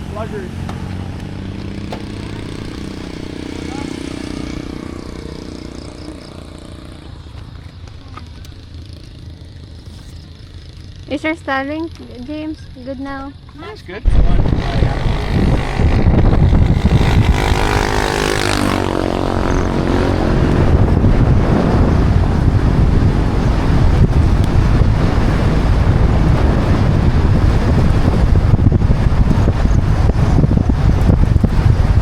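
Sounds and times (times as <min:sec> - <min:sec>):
vehicle engine running: 0:00.0 - 0:32.0
wind noise on microphone: 0:14.0 - 0:32.0.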